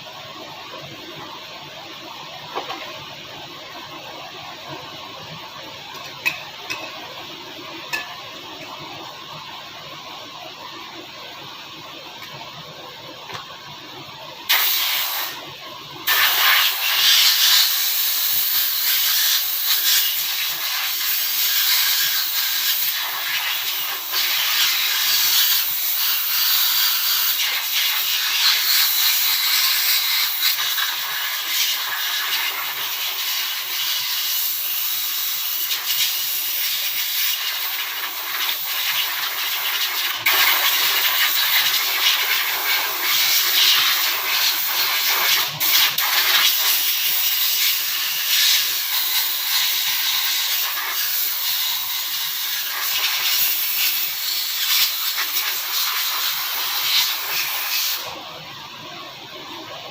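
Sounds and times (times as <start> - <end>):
pressurized air jet hissing: 14.5 - 15.4, 16.1 - 26.0.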